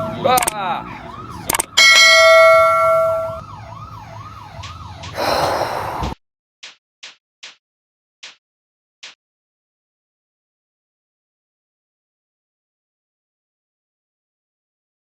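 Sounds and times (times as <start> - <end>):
warbling siren-like tone: 0.0 - 5.3
loud bell-like ring: 1.8 - 3.4.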